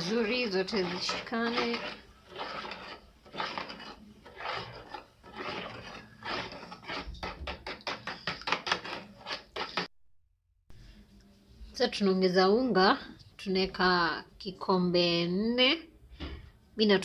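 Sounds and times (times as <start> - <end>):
utensil stirring wet mixture in bowl: 0.0 - 9.9.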